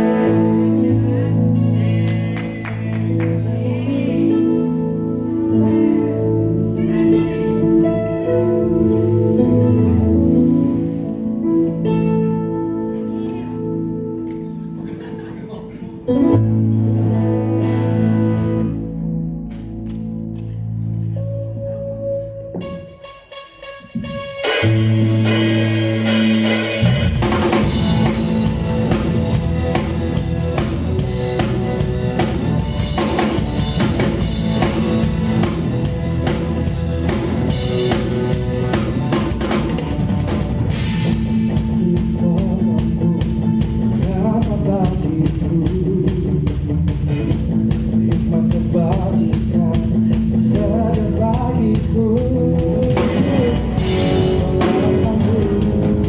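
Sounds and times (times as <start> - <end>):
live band music: 0.0 - 56.0
drum kit beat: 22.6 - 56.0.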